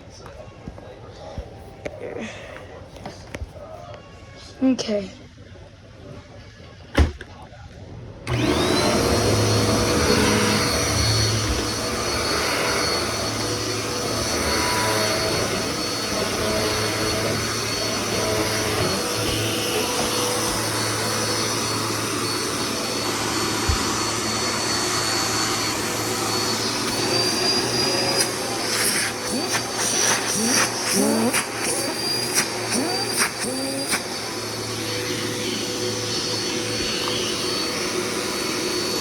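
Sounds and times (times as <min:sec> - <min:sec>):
vacuum cleaner running: 0:08.2 - 0:39.0.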